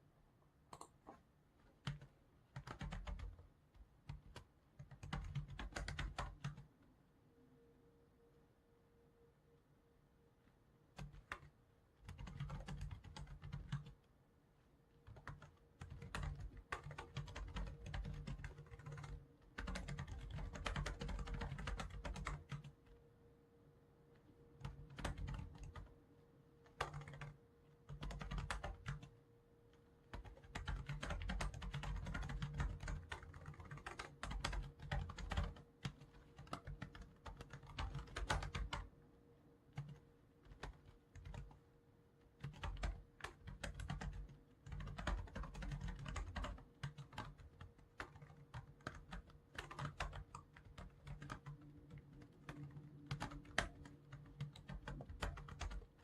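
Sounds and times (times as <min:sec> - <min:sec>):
keyboard typing clicks: 0:00.7 - 0:01.2, 0:04.0 - 0:06.7, 0:11.0 - 0:14.0, 0:15.1 - 0:22.7, 0:24.6 - 0:25.9, 0:26.6 - 0:29.1, 0:30.1 - 0:38.9, 0:42.4 - 0:56.0.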